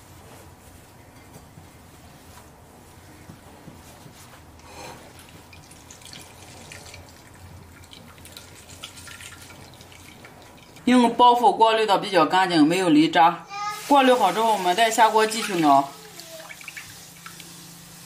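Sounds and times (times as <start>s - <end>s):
juice dripping and trickling: 4.6s - 11.0s, 14.6s - 17.8s.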